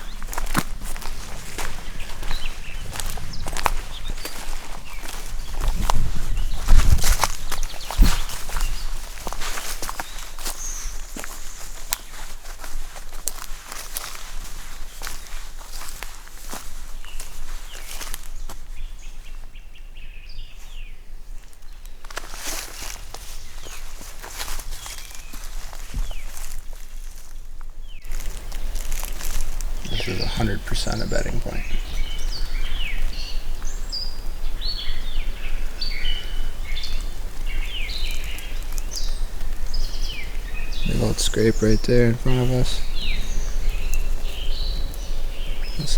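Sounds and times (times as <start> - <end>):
small bird chirping: 0.0 - 12.2, 28.0 - 45.9
footsteps crunching dry leaves: 0.0 - 19.6, 20.5 - 45.9
songbirds singing: 0.0 - 45.9
steady low rumble: 38.6 - 45.9.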